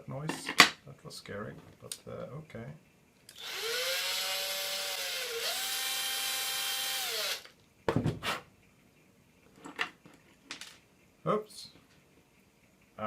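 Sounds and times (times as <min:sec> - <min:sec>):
power tool whining: 0:03.3 - 0:07.5.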